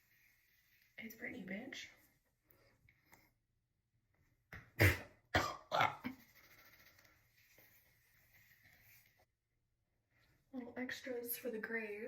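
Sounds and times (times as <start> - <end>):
woman coughing: 4.8 - 6.1.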